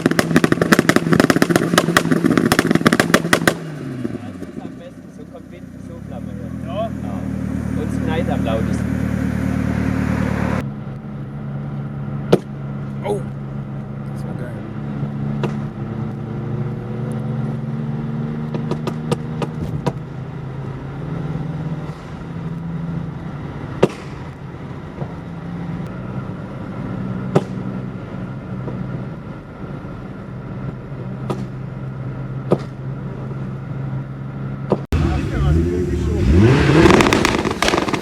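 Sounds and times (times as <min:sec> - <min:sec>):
exhaust pops and bangs: 0:00.0 - 0:04.9, 0:18.5 - 0:20.0, 0:34.7 - 0:38.0
car engine idling: 0:34.9 - 0:38.0.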